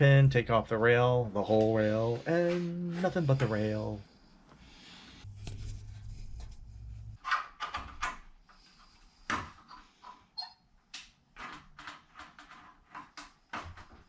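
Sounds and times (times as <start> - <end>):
low hum: 5.3 - 7.2.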